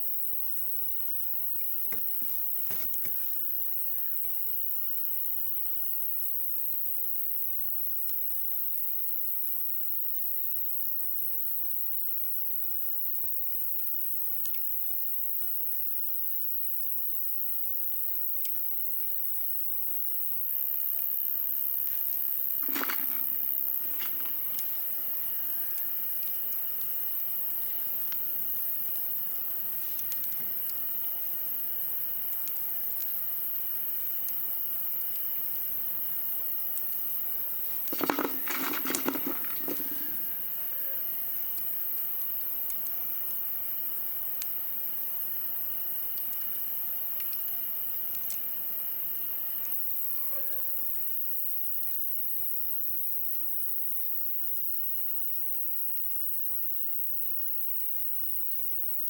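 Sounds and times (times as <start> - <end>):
campfire crackling: 1.6 - 4.5, 21.8 - 40.7
knocking and rustling of wood: 2.0 - 3.3, 22.6 - 24.6, 37.9 - 40.3.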